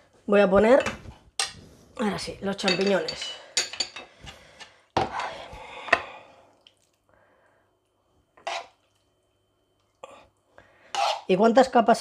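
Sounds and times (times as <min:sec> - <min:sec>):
spoon scraping a frying pan: 0:08.4 - 0:08.8, 0:10.9 - 0:11.4.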